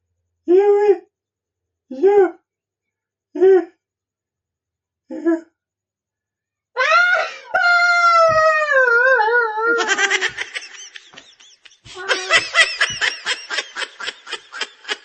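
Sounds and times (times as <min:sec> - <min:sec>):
person wailing: 0:06.8 - 0:10.4, 0:11.9 - 0:13.3
person laughing: 0:09.7 - 0:15.0.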